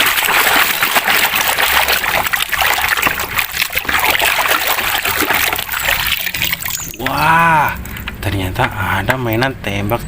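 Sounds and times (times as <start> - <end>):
running water splashing: 0.0 - 7.2.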